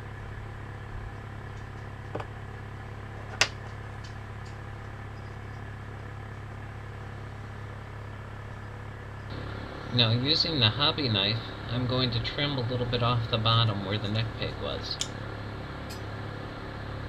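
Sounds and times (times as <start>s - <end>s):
low electrical hum: 0.0s - 17.0s
sharp click: 15.0s - 15.2s.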